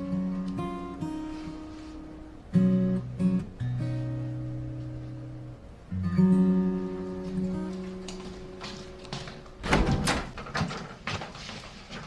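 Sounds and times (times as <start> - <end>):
acoustic guitar chord: 0.0 - 9.1.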